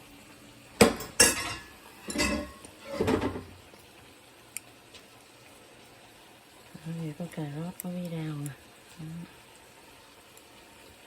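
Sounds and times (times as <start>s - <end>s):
dishes and utensils clattering: 0.8s - 3.5s.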